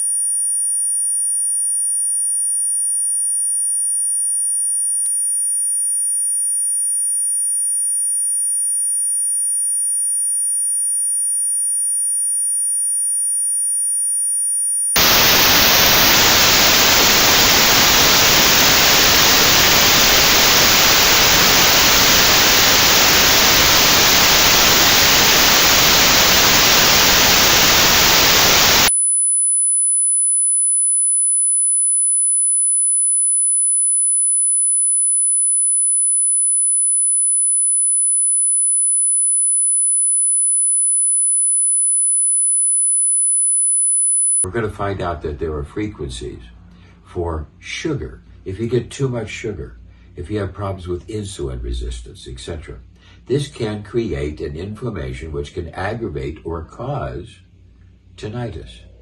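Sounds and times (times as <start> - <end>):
notched white noise: 15.0 - 28.9
high-pitched test tone: 15.0 - 44.5.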